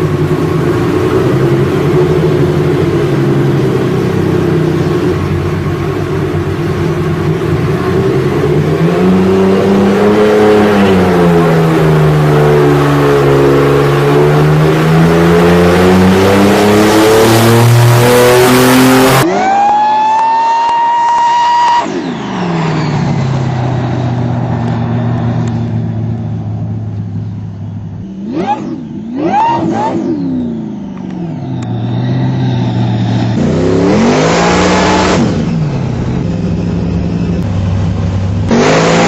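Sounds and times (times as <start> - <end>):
engine revving and idling: 0.0 - 39.0.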